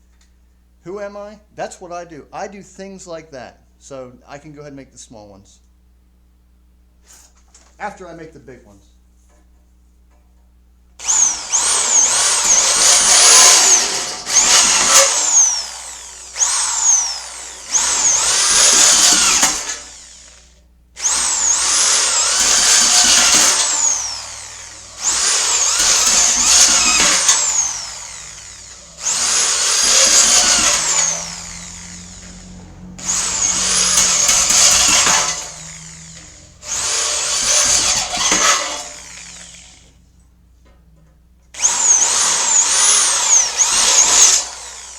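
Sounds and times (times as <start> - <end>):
high drill bit screech: 11.0 - 39.9, 41.6 - 44.9
cordless drill boring through metal: 11.0 - 40.0, 41.6 - 44.9.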